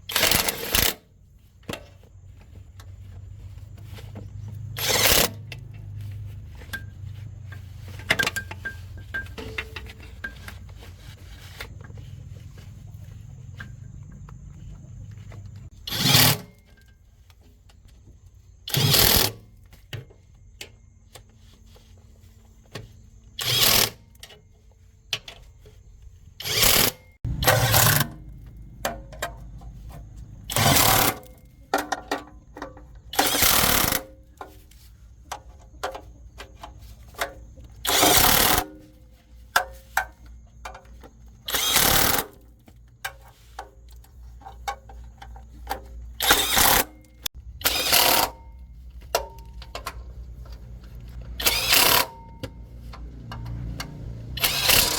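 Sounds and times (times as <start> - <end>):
power tool bursts: 0.1 - 1.0, 4.8 - 5.4, 15.8 - 16.5, 18.7 - 19.4, 23.4 - 24.0, 26.4 - 28.2, 30.5 - 31.3, 33.2 - 34.0, 37.8 - 38.6, 41.5 - 42.4, 46.2 - 46.9, 47.6 - 48.4, 51.4 - 52.3, 54.4 - 54.9.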